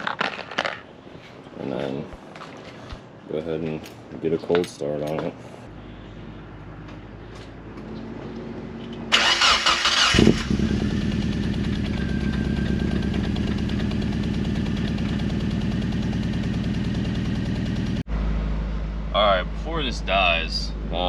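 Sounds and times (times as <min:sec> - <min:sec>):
starter motor cranking: 0:09.1 - 0:15.2
car engine idling: 0:09.1 - 0:21.0.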